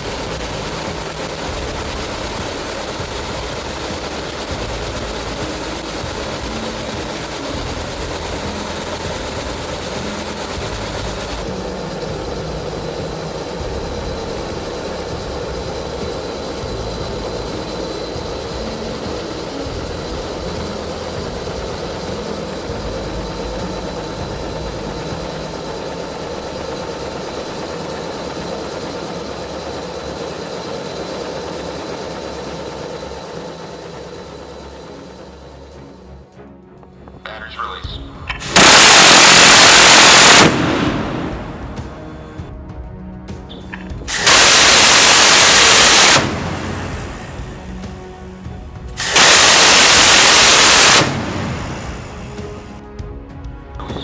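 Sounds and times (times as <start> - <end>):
background music: 0.0 - 54.0
faint constant tones: 0.0 - 54.0
mechanical rumble and hiss: 0.0 - 54.0
weapons fire bursts: 38.4 - 42.4, 44.1 - 47.4, 49.0 - 52.8.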